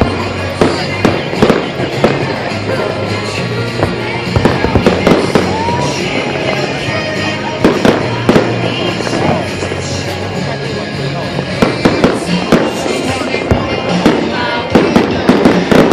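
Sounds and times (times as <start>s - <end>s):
background music: 0.0s - 15.9s
fireworks bangs: 0.0s - 15.9s.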